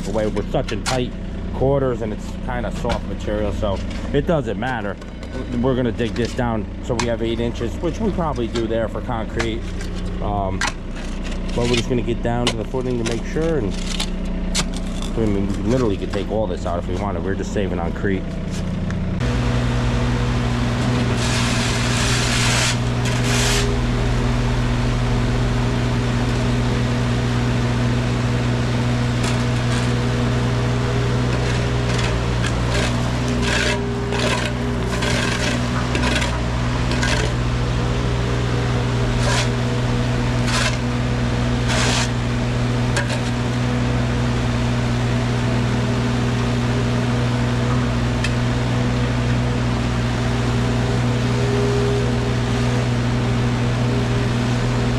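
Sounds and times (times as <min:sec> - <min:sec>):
bucket scraping soil and stone: 0:00.0 - 0:17.2, 0:20.7 - 0:24.0, 0:27.5 - 0:37.6, 0:38.3 - 0:43.7
excavator diesel engine running: 0:00.0 - 0:54.9.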